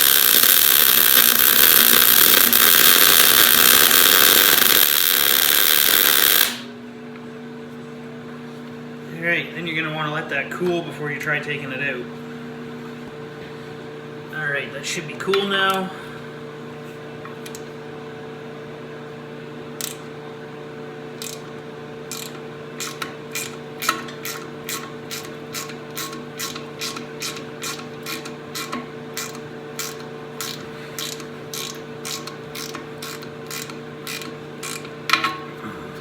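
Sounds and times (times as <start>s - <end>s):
steady low hum: 0.0s - 36.0s
ratchet wrench clicking: 21.2s - 21.4s, 22.1s - 34.9s.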